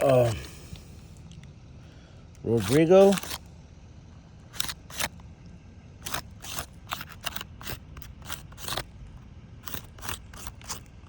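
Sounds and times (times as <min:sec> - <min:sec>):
crunching clicks and scrapes: 0:02.4 - 0:03.6, 0:04.4 - 0:11.0.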